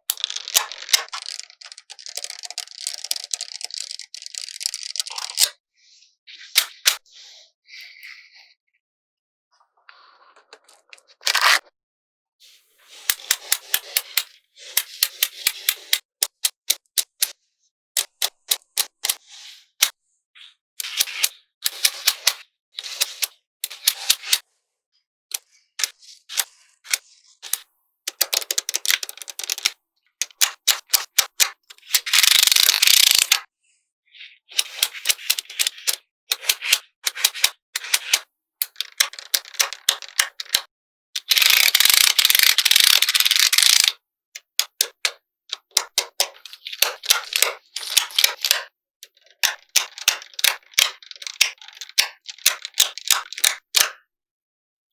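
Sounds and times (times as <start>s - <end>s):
magnetic balls clicking together: 0.0s - 5.6s, 25.3s - 33.5s, 34.6s - 54.0s.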